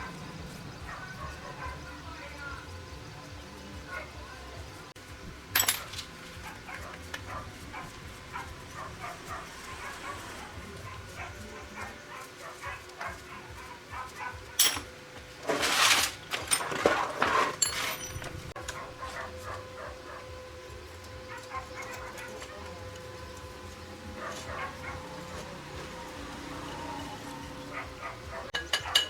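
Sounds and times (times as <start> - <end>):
dog whimpering and yipping: 21.3 - 22.6, 24.1 - 29.0.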